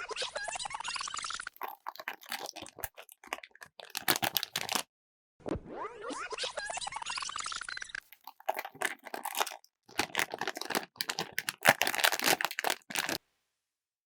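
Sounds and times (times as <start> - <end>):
plastic packaging crinkling: 1.5 - 4.8, 8.1 - 13.2.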